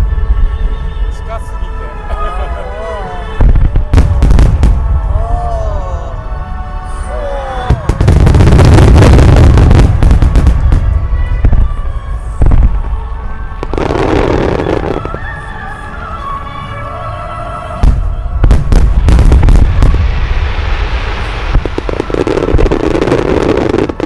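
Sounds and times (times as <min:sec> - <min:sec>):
background music: 0:00.0 - 0:24.0
fireworks crackling: 0:03.2 - 0:05.5, 0:07.6 - 0:15.8, 0:17.8 - 0:24.0
fireworks bangs: 0:03.3 - 0:05.4, 0:07.7 - 0:15.5, 0:17.8 - 0:24.0.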